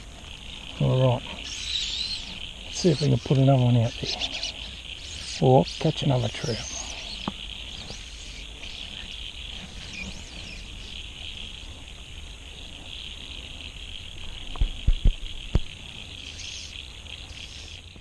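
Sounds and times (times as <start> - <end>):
insects chirring: 0.0 - 18.0
small birds chirping: 0.0 - 18.0.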